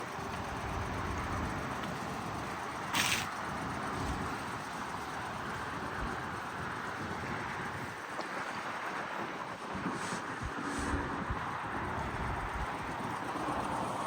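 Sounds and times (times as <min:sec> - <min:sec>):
car engine and road noise: 0:00.0 - 0:14.0
short hiss: 0:02.9 - 0:03.4.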